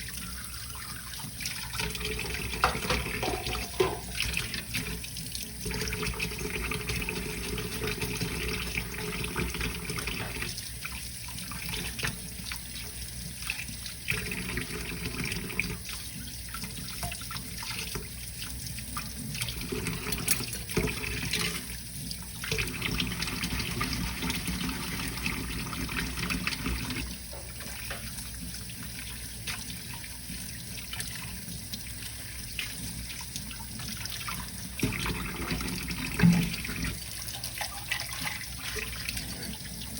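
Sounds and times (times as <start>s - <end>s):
tap water running into sink: 0.0s - 39.9s
dishes clicking: 2.6s - 4.3s.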